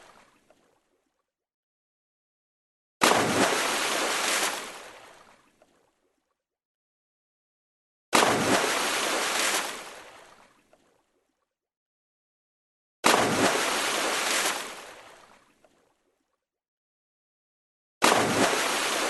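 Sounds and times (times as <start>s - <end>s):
water splash: 3.0s - 6.0s, 8.1s - 11.0s, 13.0s - 16.0s, 18.0s - 19.0s.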